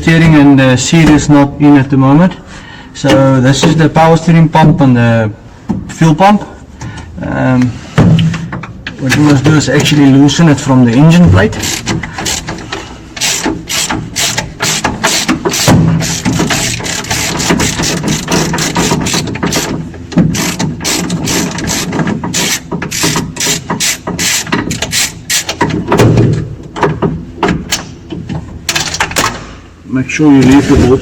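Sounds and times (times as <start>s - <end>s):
ratchet wrench clicking: 11.6s - 12.6s, 13.2s - 19.7s, 20.3s - 25.6s.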